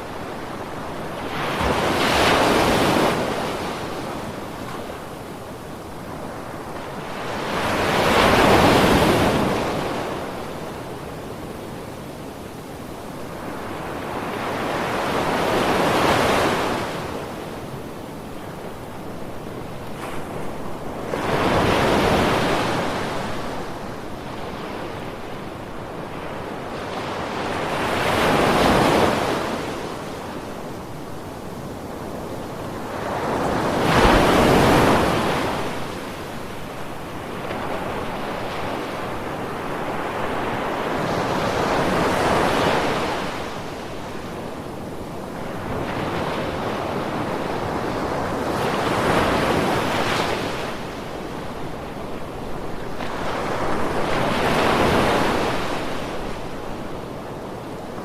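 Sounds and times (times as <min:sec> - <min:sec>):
ocean waves breaking on shore: 0:00.0 - 0:58.0.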